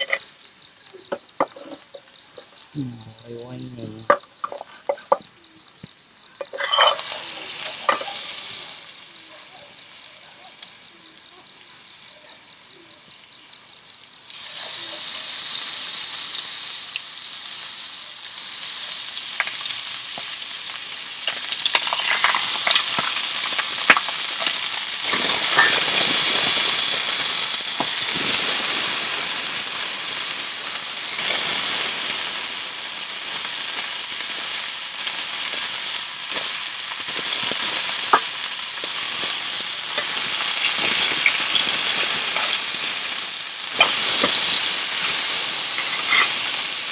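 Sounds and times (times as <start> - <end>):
food sizzling in a pan: 0.0 - 46.9.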